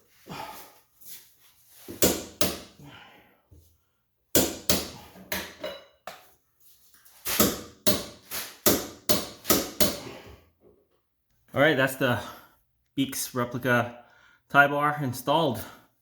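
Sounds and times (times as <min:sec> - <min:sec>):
sharp knocks of hand tools: 0:02.0 - 0:02.7, 0:04.3 - 0:06.2, 0:07.3 - 0:10.0.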